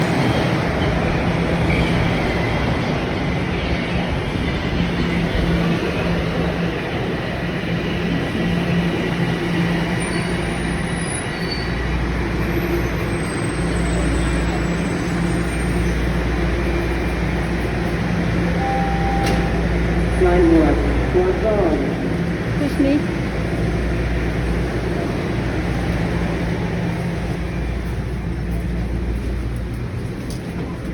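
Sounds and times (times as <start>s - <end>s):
subway train running on rails: 0.0s - 30.9s
high wheel squeals: 9.9s - 16.2s.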